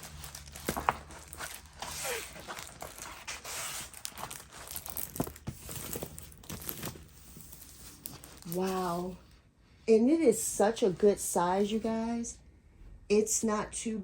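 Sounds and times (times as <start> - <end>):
packaging crinkling and rustling: 0.0 - 9.2.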